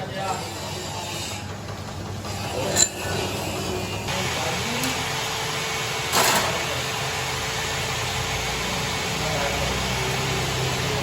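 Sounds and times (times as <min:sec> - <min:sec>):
metal lathe running: 0:00.1 - 0:11.0.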